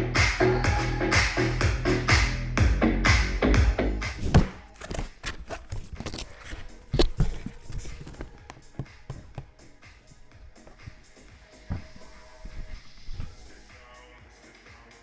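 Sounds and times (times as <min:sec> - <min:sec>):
electronic background music: 0:06.0 - 0:15.0.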